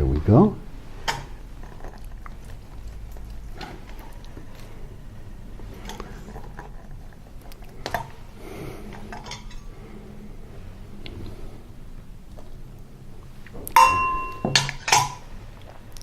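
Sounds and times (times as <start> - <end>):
kitchen utensils clinking: 9.0 - 9.7, 13.7 - 15.3.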